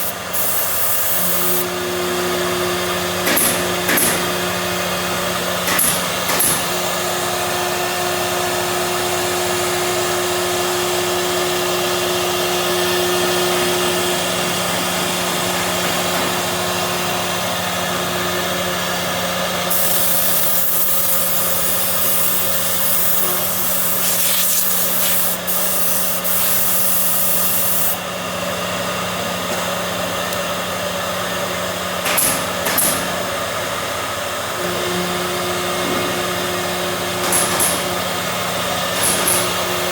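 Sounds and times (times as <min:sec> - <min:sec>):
loud hiss: 0:00.0 - 0:01.6, 0:19.7 - 0:28.0
machine motor hum: 0:00.0 - 0:31.6.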